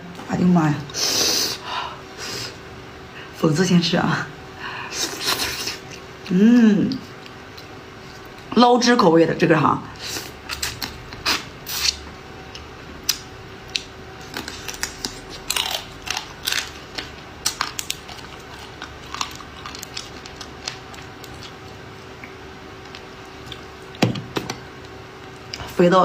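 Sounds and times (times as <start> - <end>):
chewing with wet smacks: 17.0 - 24.0.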